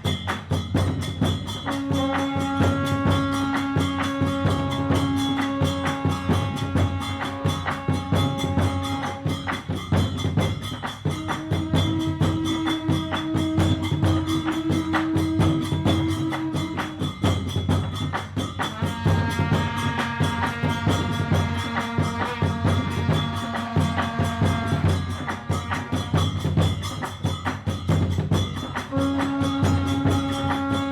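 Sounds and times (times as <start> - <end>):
fast percussion strokes: 0.0 - 30.9.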